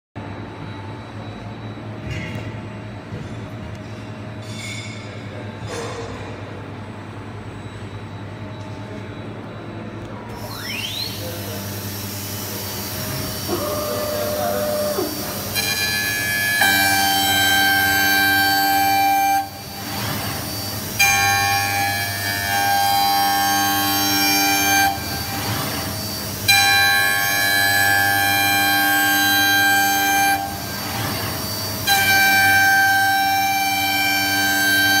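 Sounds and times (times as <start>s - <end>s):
steady whining tones: 0.2s - 28.9s
rising machine whine: 7.0s - 21.9s
lathe machine humming: 10.3s - 35.0s.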